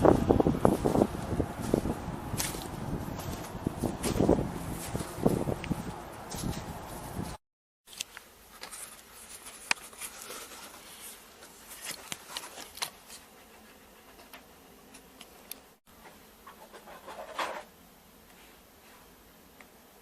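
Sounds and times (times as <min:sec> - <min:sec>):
wind buffeting microphone: 0:00.0 - 0:07.4.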